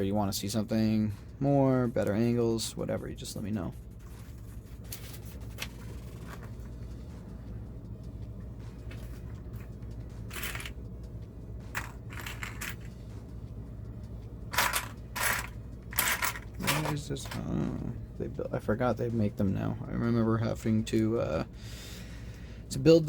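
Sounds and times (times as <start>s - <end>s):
steady low hum: 0.0s - 23.0s
plastic pieces clicking and rustling: 14.6s - 17.4s.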